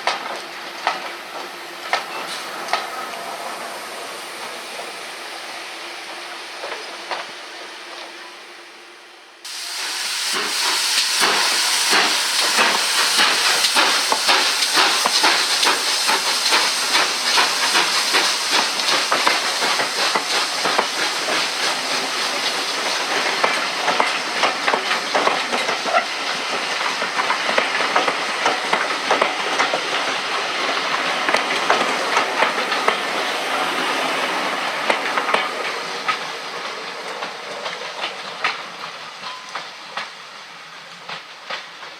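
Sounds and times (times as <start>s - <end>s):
steam locomotive hissing: 0.0s - 41.9s.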